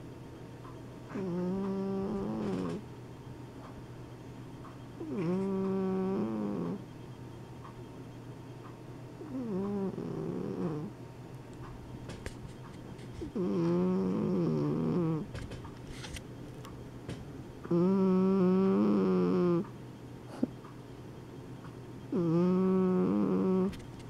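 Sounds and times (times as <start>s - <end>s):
cat snoring: 1.1s - 2.8s, 5.0s - 6.8s, 9.2s - 11.0s, 13.2s - 15.3s, 17.7s - 19.6s, 22.1s - 23.7s.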